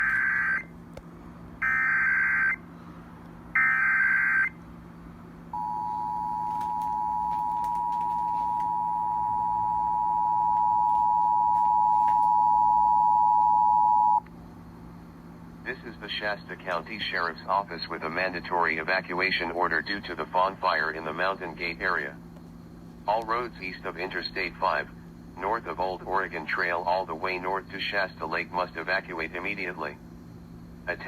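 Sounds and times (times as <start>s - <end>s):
two-tone attention signal: 5.6s - 14.2s.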